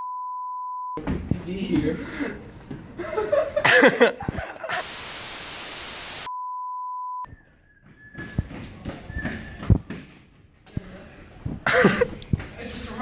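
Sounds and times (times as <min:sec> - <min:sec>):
television static hiss: 0:04.7 - 0:06.3.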